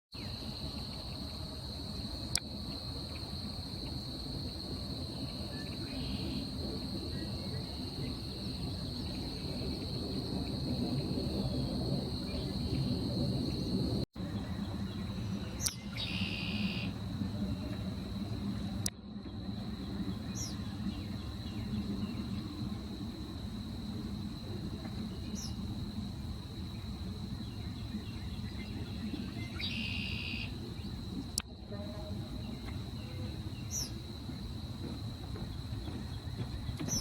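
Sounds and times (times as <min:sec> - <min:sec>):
high insect trill: 0:00.2 - 0:13.9, 0:14.6 - 0:18.8, 0:19.4 - 0:37.0
low background rumble: 0:01.4 - 0:29.7.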